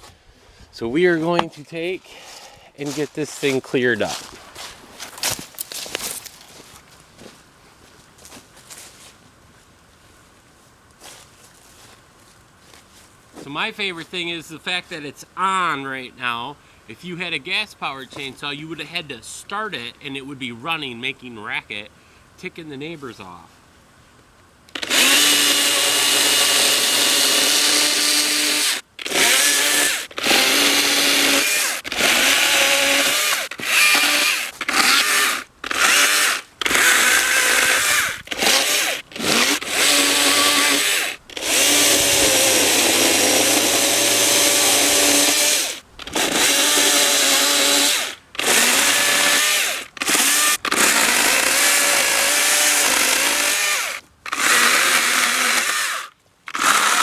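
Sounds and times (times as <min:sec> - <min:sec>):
electric chainsaw cutting wood: 0:24.7 - 0:57.0.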